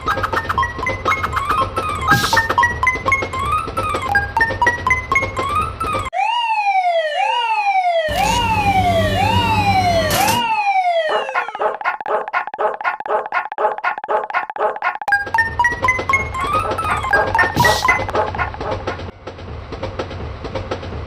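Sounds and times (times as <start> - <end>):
falling siren-like tones: 1.1 - 11.8, 15.6 - 18.1
rapid ringing alarm: 7.1 - 11.6.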